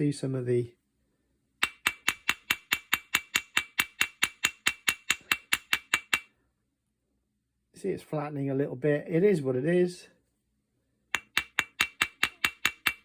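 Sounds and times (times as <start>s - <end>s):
small hammer striking metal screw: 1.6s - 6.3s, 11.1s - 13.0s.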